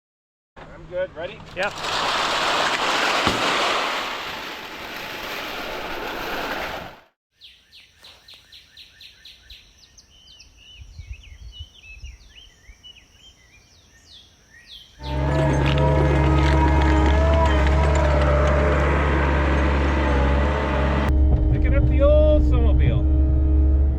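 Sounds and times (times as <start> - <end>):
small birds chirping and singing: 7.3 - 18.2.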